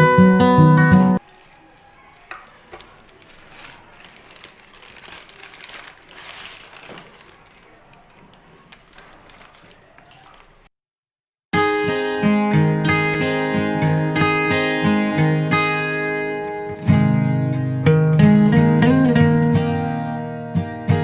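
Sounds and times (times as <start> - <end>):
strummed acoustic guitar: 0.0 - 1.2, 11.6 - 21.0
faint rustling: 1.2 - 10.7.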